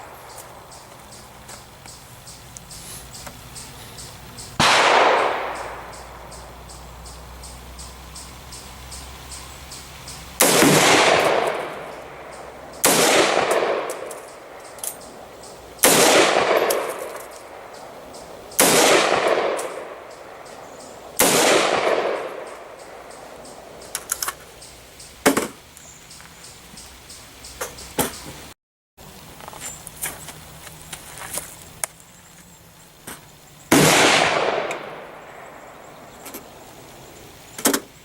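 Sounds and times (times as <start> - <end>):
gunshots with echo: 4.6 - 6.4, 10.4 - 15.2, 15.8 - 23.8, 33.7 - 35.7.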